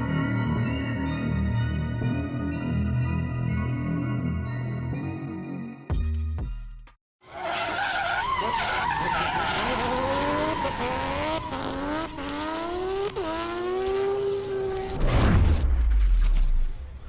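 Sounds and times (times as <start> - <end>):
car engine accelerating: 8.4 - 15.0.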